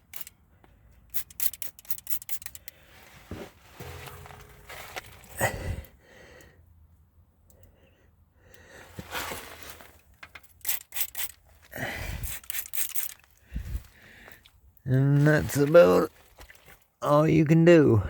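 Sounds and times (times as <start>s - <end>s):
handling noise: 1.1s - 5.9s.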